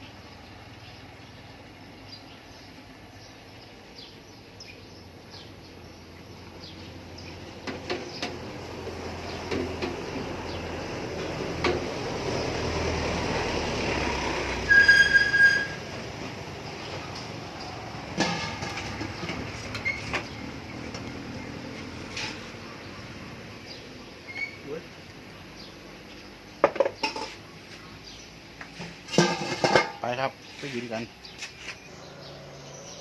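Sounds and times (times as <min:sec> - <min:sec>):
vehicle passing: 0:05.3 - 0:26.4, 0:30.6 - 0:33.0
high-pitched horn tone: 0:14.7 - 0:15.8.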